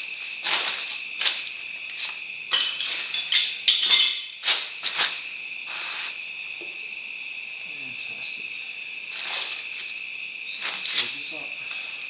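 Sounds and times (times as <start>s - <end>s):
crickets chirping: 0.0s - 12.0s
metal parts clinking and clanking: 2.5s - 4.5s.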